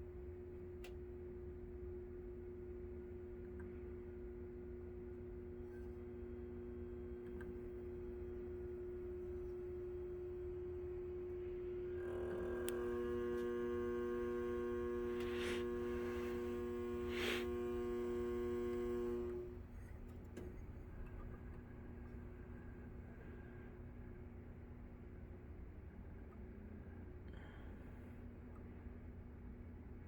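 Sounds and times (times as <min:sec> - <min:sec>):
steady low hum: 0:00.0 - 0:30.0
electrical relay buzzing: 0:06.8 - 0:19.7.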